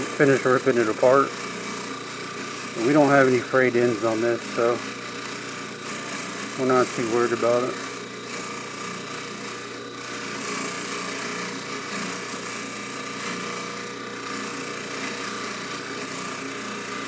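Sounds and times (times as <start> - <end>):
chain rubbing on spinning wheel: 0.0 - 9.1
polishing buffer motor humming: 0.0 - 17.0.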